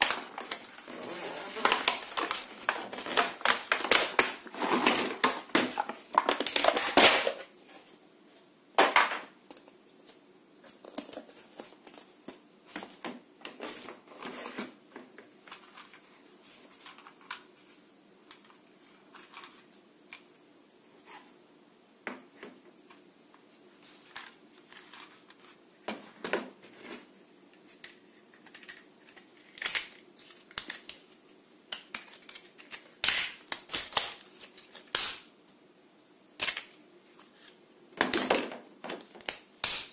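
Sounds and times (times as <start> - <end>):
packaging crinkling and rustling: 0.0 - 7.5.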